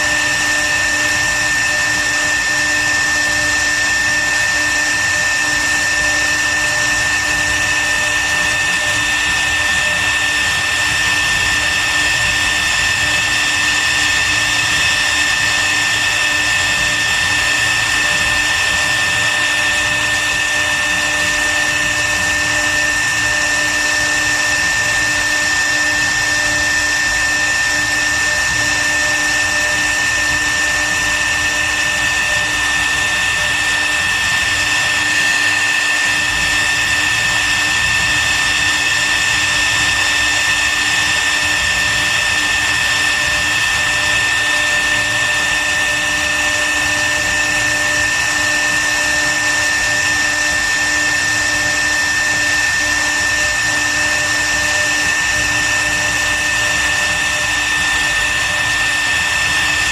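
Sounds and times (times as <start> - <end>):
router spindle high whine: 0.0 - 59.9.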